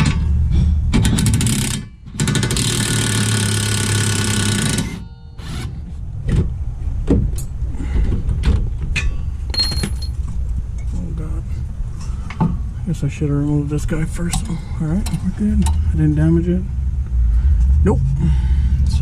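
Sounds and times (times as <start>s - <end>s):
tools and metal parts clanking: 0.0s - 5.4s, 7.2s - 11.0s
impact wrench hammering: 0.0s - 5.5s.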